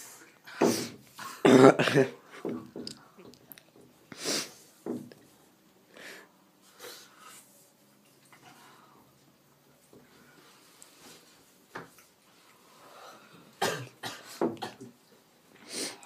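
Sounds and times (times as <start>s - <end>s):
people coughing: 1.2s - 2.2s, 13.6s - 14.9s.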